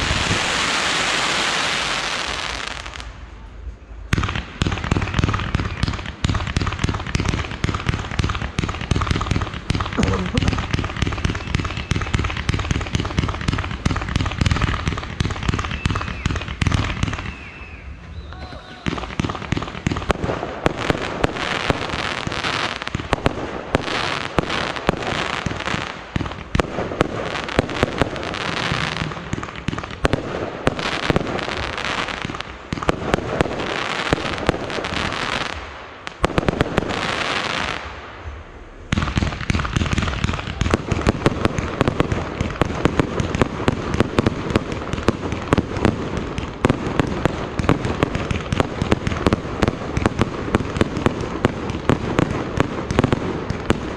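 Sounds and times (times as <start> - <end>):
fireworks crackling and banging: 0.0 - 3.5, 4.1 - 53.9.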